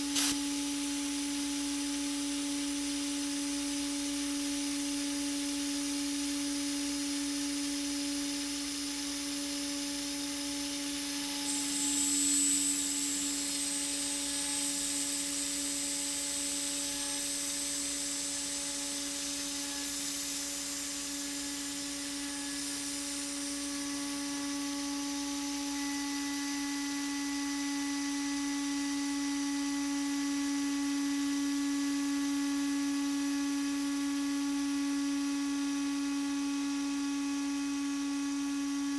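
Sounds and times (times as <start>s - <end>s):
hiss: 0.0s - 0.4s
thin high whine: 0.0s - 0.4s, 11.4s - 17.0s.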